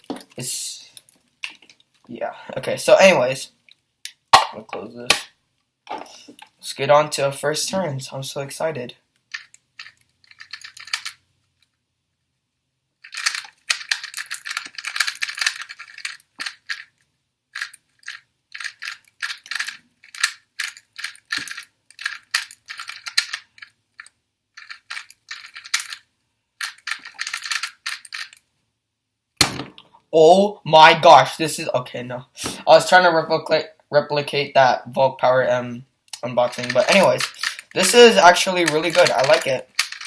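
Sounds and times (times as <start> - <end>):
puzzle cube plastic clicking: 9.2 - 11.2, 13.0 - 16.9, 17.6 - 28.5, 36.5 - 40.0.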